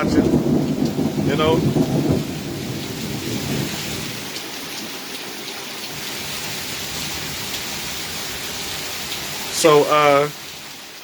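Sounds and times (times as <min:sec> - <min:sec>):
thunder rumble: 0:00.0 - 0:08.6
rain hissing: 0:00.0 - 0:11.0.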